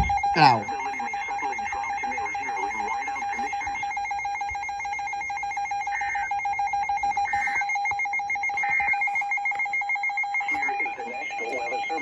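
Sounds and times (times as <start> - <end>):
fainter higher pulsing tone: 0.0 - 7.6
rapid electronic alert beeping: 0.0 - 12.0.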